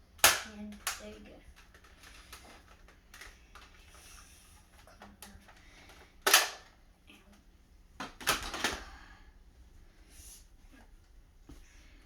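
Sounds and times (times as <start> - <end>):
toy blaster spring shot: 0.2 - 1.0, 6.2 - 6.7
plastic clicks and clacks: 0.2 - 3.8.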